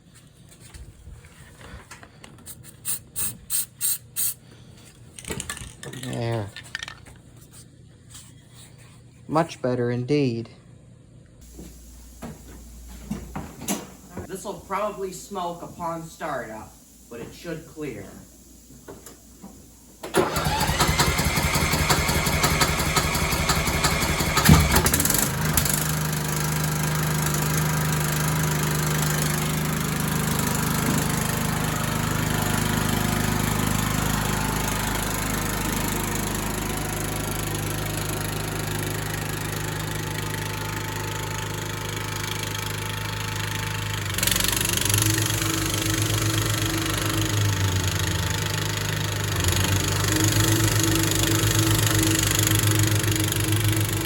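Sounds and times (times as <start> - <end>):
electric starter cranking whine: 11.4 - 54.0
lawn tractor engine running: 20.1 - 54.0.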